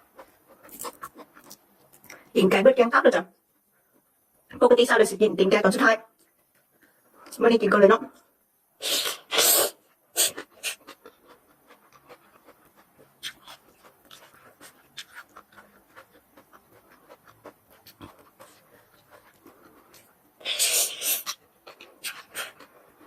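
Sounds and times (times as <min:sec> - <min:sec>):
person chewing and sucking food: 0:00.0 - 0:02.3, 0:08.8 - 0:23.0.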